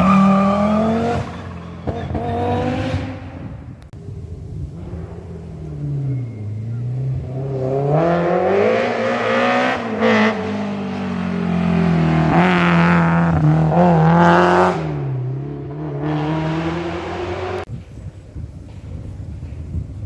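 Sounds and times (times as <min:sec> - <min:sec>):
rally car engine revving: 0:00.0 - 0:17.7.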